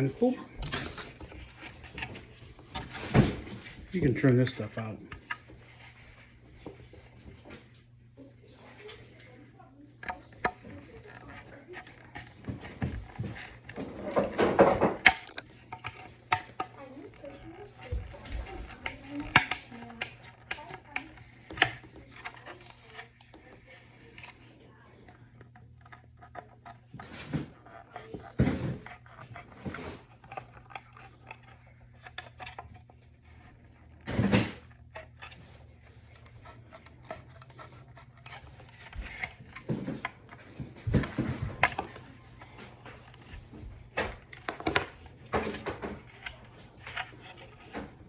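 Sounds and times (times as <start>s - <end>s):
plastic clicking and crackling: 10.0s - 48.0s.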